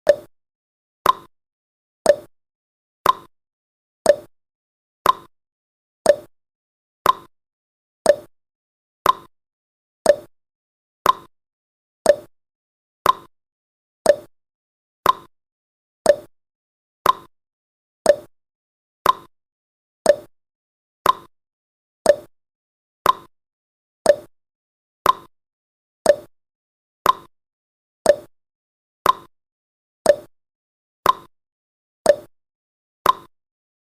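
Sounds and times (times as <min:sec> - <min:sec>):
timer ticking pops: 0:00.0 - 0:00.3, 0:01.0 - 0:01.3, 0:02.0 - 0:02.3, 0:03.0 - 0:03.3, 0:04.0 - 0:04.3, 0:05.0 - 0:05.3, 0:06.0 - 0:06.3, 0:07.0 - 0:07.3, 0:08.0 - 0:08.3, 0:09.0 - 0:09.3, 0:10.0 - 0:10.3, 0:11.0 - 0:11.3, 0:12.0 - 0:12.3, 0:13.0 - 0:13.3, 0:14.0 - 0:14.3, 0:15.0 - 0:15.3, 0:16.0 - 0:16.3, 0:17.0 - 0:17.3, 0:18.0 - 0:18.4, 0:19.0 - 0:19.3, 0:20.0 - 0:20.3, 0:21.0 - 0:21.3, 0:22.0 - 0:22.3, 0:23.0 - 0:23.3, 0:24.0 - 0:24.3, 0:25.0 - 0:25.3, 0:26.0 - 0:26.4, 0:27.0 - 0:27.3, 0:28.0 - 0:28.4, 0:29.0 - 0:29.3, 0:30.0 - 0:30.4, 0:31.0 - 0:31.3, 0:32.0 - 0:32.4, 0:33.0 - 0:33.4.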